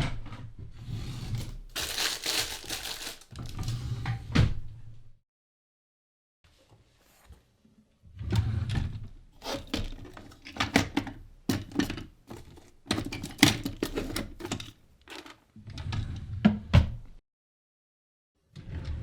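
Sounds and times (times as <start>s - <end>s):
drawers sliding and scraping: 0.2s - 4.6s, 8.1s - 17.1s, 18.6s - 19.0s
objects clattering: 1.3s - 4.0s, 9.4s - 15.4s.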